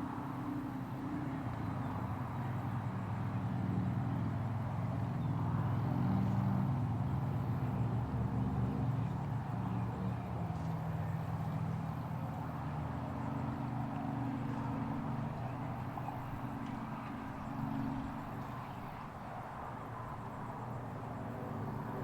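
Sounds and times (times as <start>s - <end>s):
heavy engine humming: 5.5s - 22.0s.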